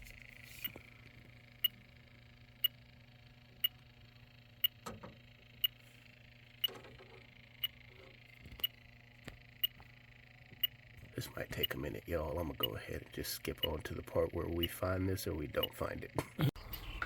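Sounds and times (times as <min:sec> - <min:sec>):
leak detector ticking: 0:04.6 - 0:04.8, 0:11.6 - 0:11.8, 0:13.5 - 0:13.8, 0:14.6 - 0:14.8, 0:15.6 - 0:15.8.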